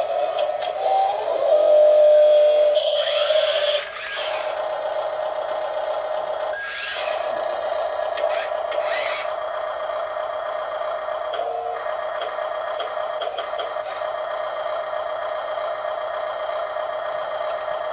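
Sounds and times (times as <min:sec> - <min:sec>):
small electric motors whirring: 0:00.0 - 0:04.8, 0:06.5 - 0:09.4, 0:13.2 - 0:14.1.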